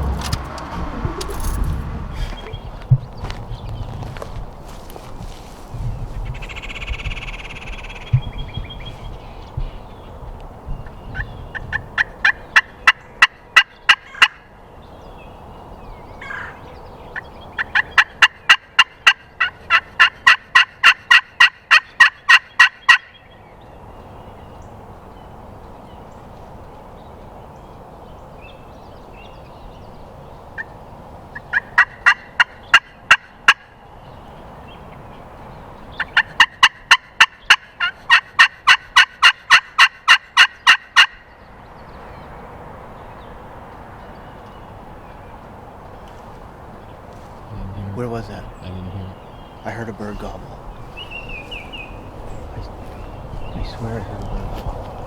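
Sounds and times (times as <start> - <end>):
turkey call yelps: 12.0 - 14.4, 16.2 - 16.6, 36.0 - 41.2.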